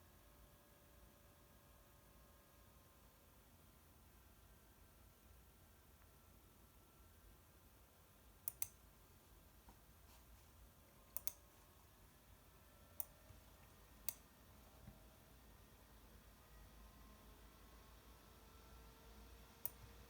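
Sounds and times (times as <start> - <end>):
faint low hum: 0.0 - 20.0
computer mouse clicking: 8.4 - 8.8, 11.1 - 11.5, 13.0 - 15.0, 19.6 - 20.0.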